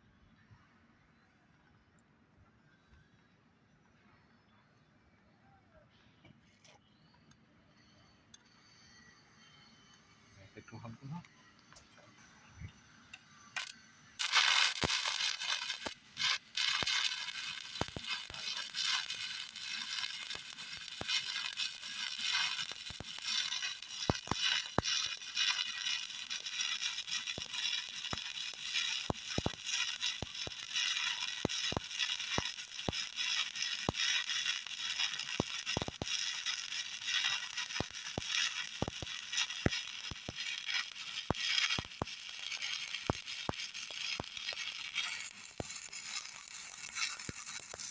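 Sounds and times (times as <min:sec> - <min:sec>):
welding arc hissing and popping: 0:13.6 - 0:47.9.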